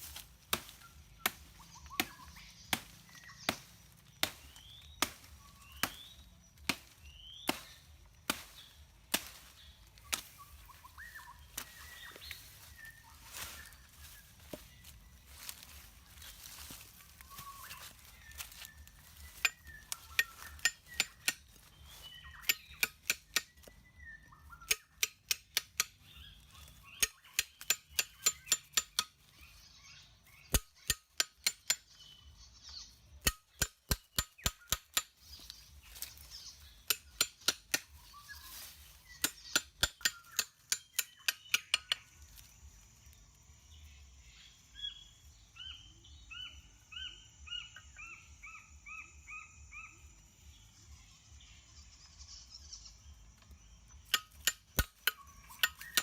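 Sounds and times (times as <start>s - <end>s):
birds calling: 0.0s - 56.0s.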